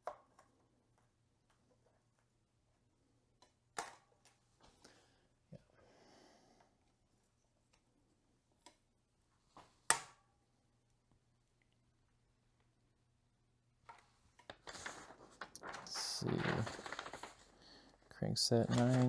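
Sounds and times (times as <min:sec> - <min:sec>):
soft rustle: 0:14.5 - 0:19.0.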